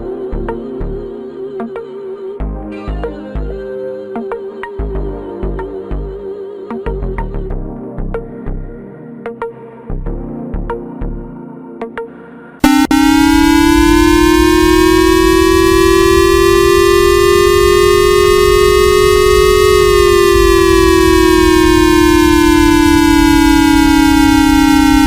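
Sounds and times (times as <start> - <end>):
wailing warning siren: 12.6 - 25.0.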